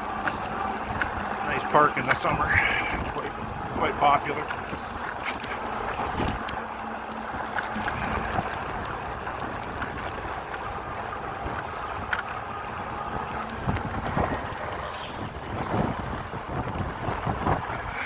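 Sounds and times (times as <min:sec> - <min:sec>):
wind and rain on microphone: 0:00.0 - 0:18.0.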